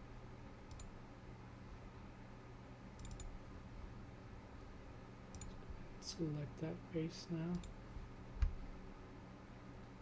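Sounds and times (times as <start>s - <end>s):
faint low hum: 0.0s - 10.0s
computer mouse clicking: 0.7s - 1.0s, 3.0s - 3.4s, 5.3s - 5.6s, 7.5s - 7.8s.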